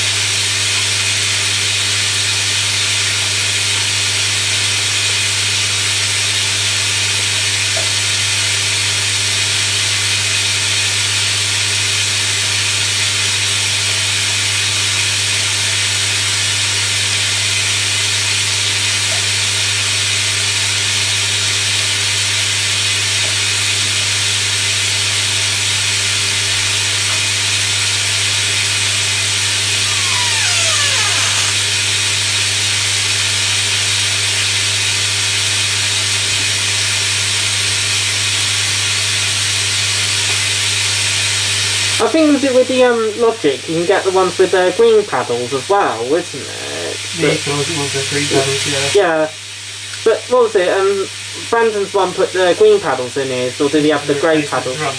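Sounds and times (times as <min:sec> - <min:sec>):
washing machine motor whine: 0:00.0 - 0:36.1, 0:41.0 - 0:54.9
falling squeal-like tone: 0:29.8 - 0:31.8.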